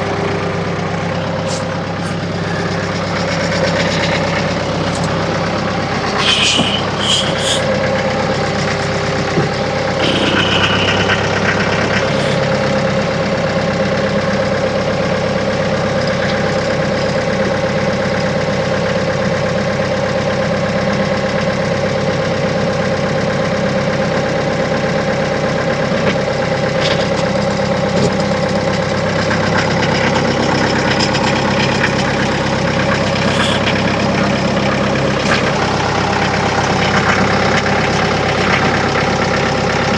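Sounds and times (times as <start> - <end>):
tractor engine running: 0.0 - 39.9
short high squeaks: 6.0 - 7.8, 10.0 - 12.5, 33.2 - 33.7.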